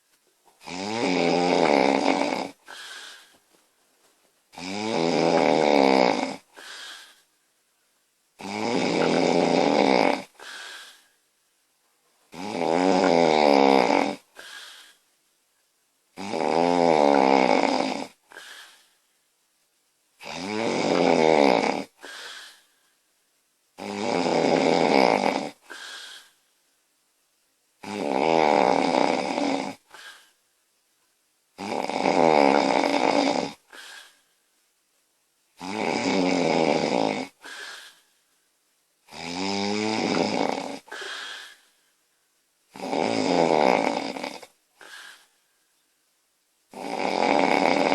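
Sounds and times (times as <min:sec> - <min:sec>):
woman snoring loudly: 0:00.6 - 0:03.2, 0:04.5 - 0:07.1, 0:08.4 - 0:11.0, 0:12.3 - 0:14.9, 0:16.2 - 0:18.7, 0:20.2 - 0:22.6, 0:23.8 - 0:26.3, 0:27.8 - 0:30.2, 0:31.6 - 0:34.1, 0:35.6 - 0:38.0, 0:39.1 - 0:41.6, 0:42.7 - 0:45.3, 0:46.7 - 0:47.9
quiet breath: 0:02.4 - 0:04.2, 0:06.4 - 0:07.6, 0:10.3 - 0:11.4, 0:14.2 - 0:15.2, 0:18.1 - 0:19.3, 0:21.9 - 0:23.2, 0:25.6 - 0:26.7, 0:29.8 - 0:30.5, 0:33.6 - 0:34.5, 0:37.3 - 0:38.4, 0:40.8 - 0:42.3, 0:44.4 - 0:45.8.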